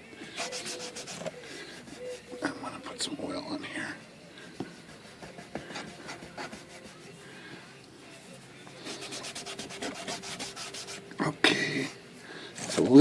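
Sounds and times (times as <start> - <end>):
cloth rag rubbing: 0.3 - 2.6, 4.6 - 7.2, 8.1 - 11.1.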